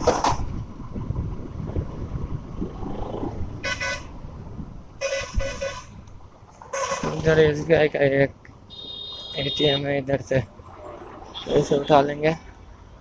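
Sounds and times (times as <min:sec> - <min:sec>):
road and wind rumble: 0:00.0 - 0:13.0
vehicle horns honking: 0:03.6 - 0:04.2, 0:05.0 - 0:06.0, 0:06.7 - 0:07.4, 0:08.7 - 0:10.0, 0:11.3 - 0:12.2.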